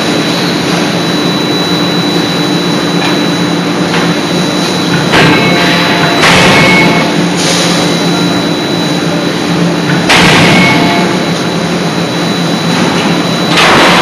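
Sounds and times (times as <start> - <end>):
forging hammer machine roar: 4.9 - 14.0.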